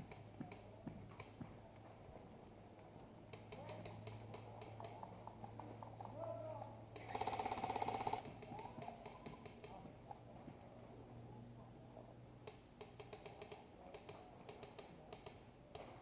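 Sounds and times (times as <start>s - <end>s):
distant airsoft fire clicks: 3.3s - 5.8s, 12.4s - 16.0s
airsoft gun full-auto burst: 7.0s - 8.3s.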